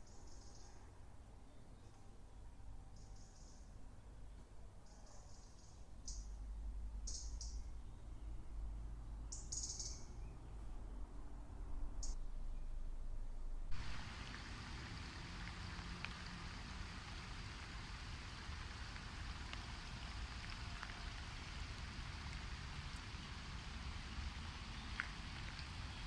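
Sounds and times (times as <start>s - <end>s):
drip-like ticks: 13.7s - 26.0s
water pattering: 13.7s - 26.0s.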